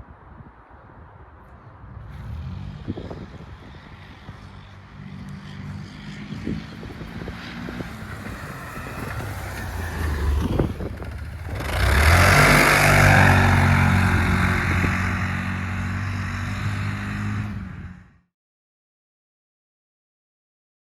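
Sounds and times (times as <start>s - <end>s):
vehicle engine running: 2.1s - 18.2s.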